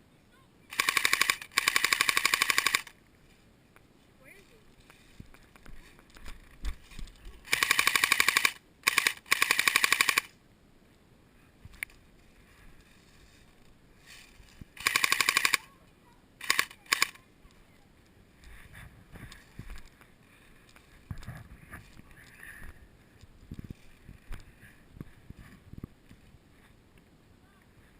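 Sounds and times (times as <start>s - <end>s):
airsoft gun firing bursts: 0.7s - 3.0s, 7.4s - 10.4s, 14.8s - 15.7s, 16.4s - 17.2s.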